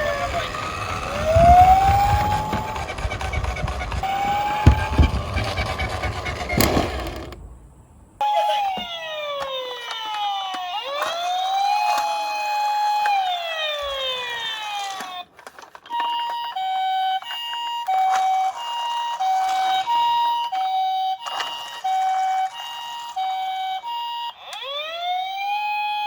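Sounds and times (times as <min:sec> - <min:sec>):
overlapping wailing toy sirens: 0:00.0 - 0:07.3, 0:08.2 - 0:26.0
two-tone ambulance siren: 0:17.7 - 0:26.0.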